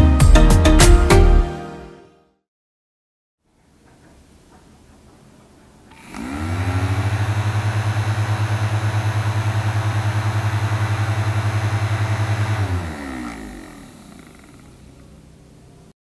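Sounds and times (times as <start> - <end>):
small fan motor whining and humming: 5.8 - 15.8.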